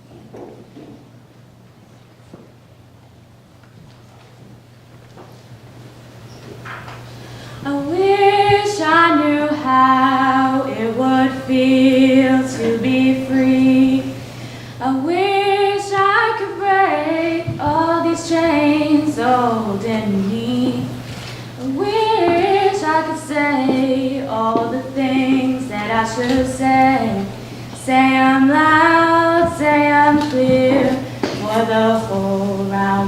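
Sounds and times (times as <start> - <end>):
faint steady hum: 0.0 - 33.0
young voices singing together: 7.6 - 33.0.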